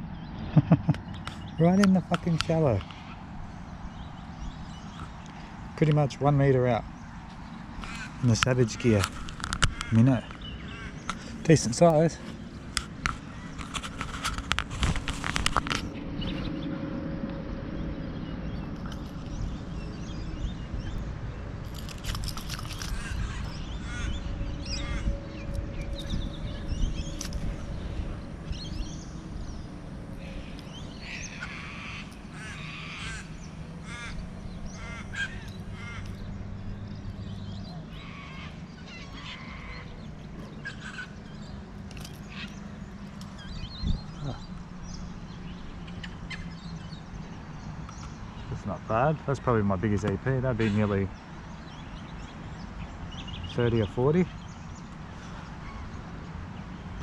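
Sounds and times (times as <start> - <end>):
crows cawing: 7.8 - 12.0, 22.6 - 29.0, 30.2 - 37.0, 37.6 - 41.4, 42.1 - 42.8, 55.1 - 56.1
low rumble: 15.0 - 47.1.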